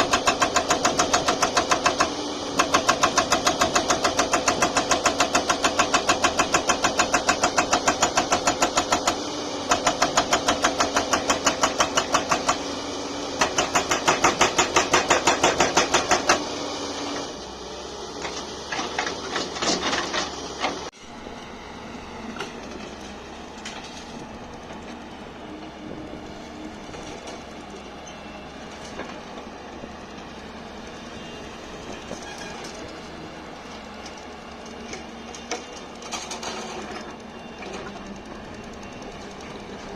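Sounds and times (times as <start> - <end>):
hydraulic breaker hammering: 0.0 - 12.7, 13.4 - 16.4.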